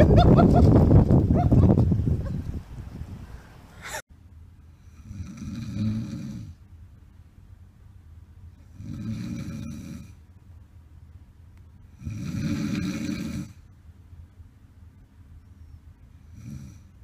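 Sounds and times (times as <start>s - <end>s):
person snoring: 8.7s - 10.2s, 12.0s - 13.6s.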